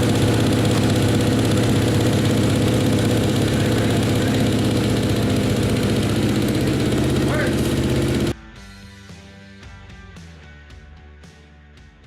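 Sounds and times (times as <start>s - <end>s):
motocross bike engine idling: 0.0s - 8.3s.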